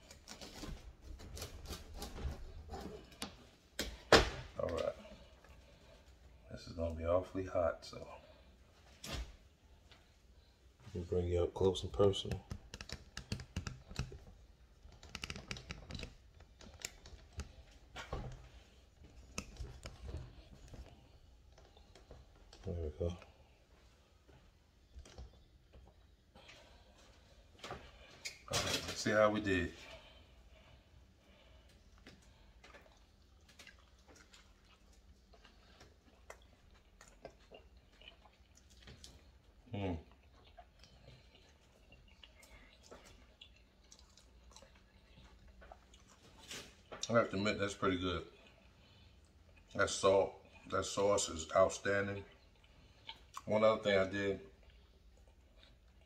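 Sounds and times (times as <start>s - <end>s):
chewing crunchy crust: 29.8s - 50.7s, 51.8s - 56.0s.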